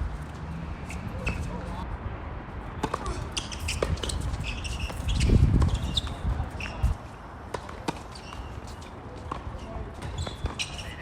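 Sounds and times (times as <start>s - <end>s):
tennis balls hit and bouncing: 2.8s - 11.0s
wind buffeting microphone: 3.1s - 7.0s
short high squeaks: 3.3s - 7.0s, 10.0s - 11.0s.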